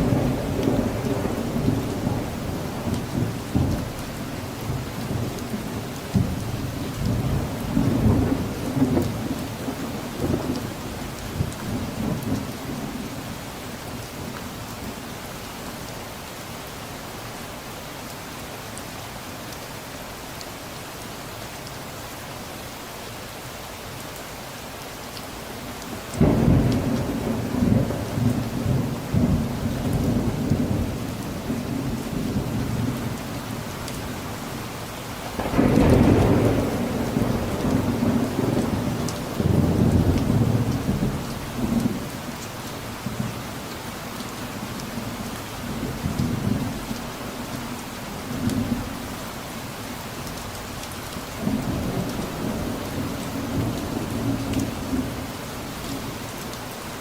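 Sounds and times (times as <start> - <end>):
rolling thunder: 0.0 - 4.0, 6.2 - 10.6, 26.2 - 34.1, 35.2 - 42.0
steady rain: 0.0 - 57.0.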